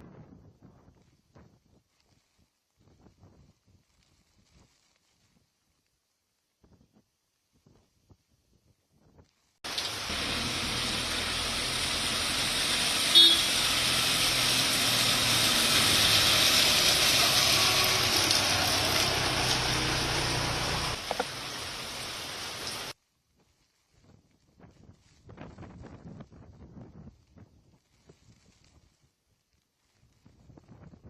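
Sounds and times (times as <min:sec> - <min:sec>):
wind and heavy rain rushing: 0:09.7 - 0:23.0
car horn toot: 0:13.1 - 0:13.6.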